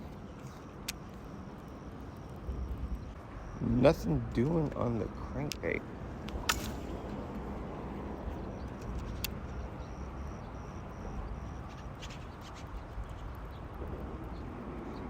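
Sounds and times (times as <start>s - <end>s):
faint high chirp: 0.0s - 5.4s, 8.0s - 12.7s
low outdoor rumble: 0.0s - 15.0s
sharp clicks: 0.3s - 3.6s.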